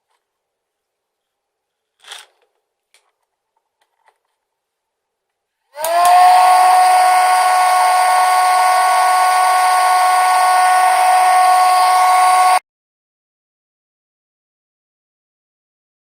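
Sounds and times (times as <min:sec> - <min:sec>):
small electric motor whining: 0:05.8 - 0:12.6.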